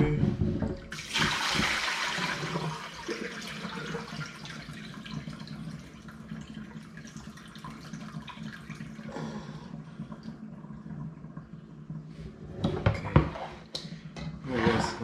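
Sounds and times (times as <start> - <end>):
tap water splashing into sink: 0.9 - 5.6.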